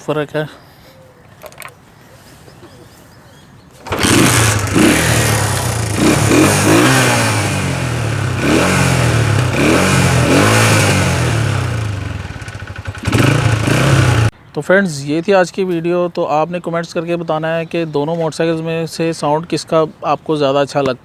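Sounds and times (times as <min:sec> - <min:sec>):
motorcycle engine revving: 0:03.8 - 0:14.3.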